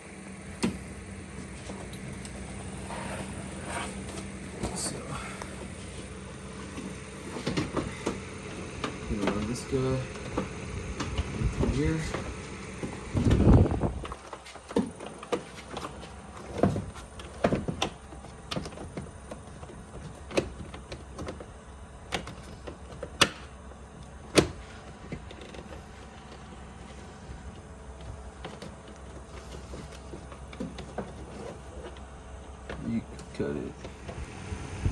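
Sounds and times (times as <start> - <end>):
clicks and knocks of panel parts: 6.6 - 26.5, 27.5 - 34.3.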